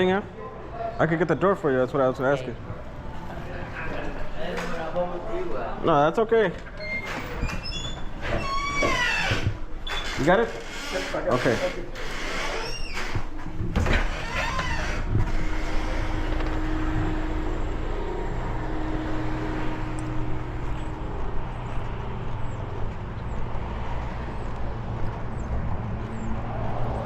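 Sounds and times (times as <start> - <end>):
car engine and road rumble: 11.4 - 27.0.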